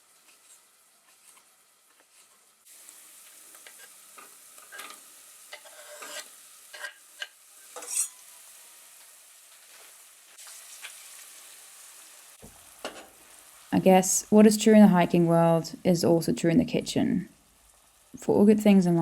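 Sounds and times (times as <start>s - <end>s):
food sizzling in a frying pan: 0.0s - 19.0s
utensil scraping a pan: 3.6s - 8.3s.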